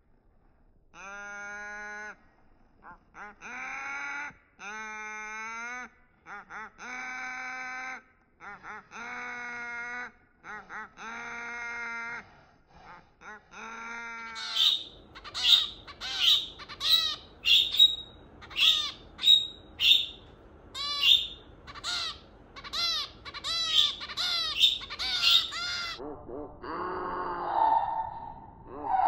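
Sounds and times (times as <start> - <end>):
finch calling: 14.4 - 26.0.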